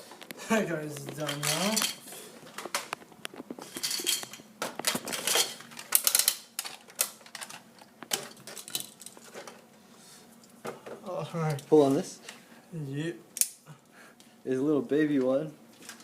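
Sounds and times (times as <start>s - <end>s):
plastic parts rattling: 1.1s - 3.0s, 3.6s - 9.6s.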